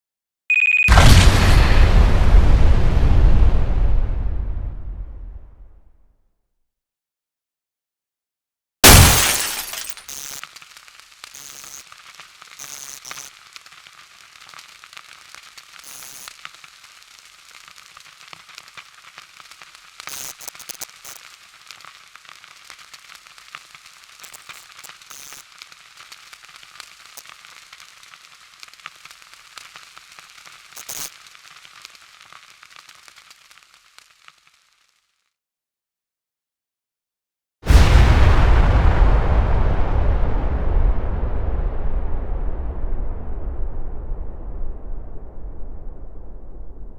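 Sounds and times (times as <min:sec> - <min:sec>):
crackling and sizzling hiss: 0:08.8 - 0:35.4.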